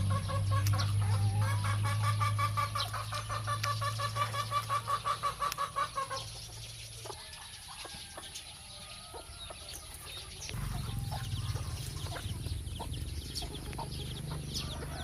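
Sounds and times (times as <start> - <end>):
chickens clucking: 0.0 - 15.0
low rumble: 10.5 - 15.0.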